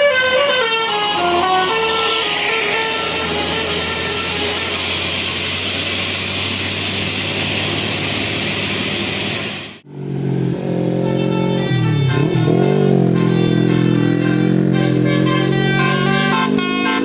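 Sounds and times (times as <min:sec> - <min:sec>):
chord of steady tones: 0:00.0 - 0:05.5, 0:10.4 - 0:17.0
bus passing at speed: 0:00.0 - 0:17.0.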